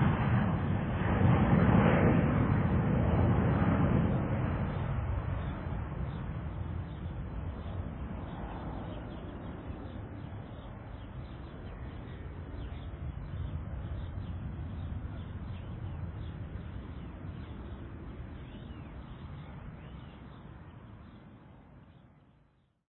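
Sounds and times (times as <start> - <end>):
airplane rumble: 0.0 - 22.2
small birds chirping: 4.7 - 22.7.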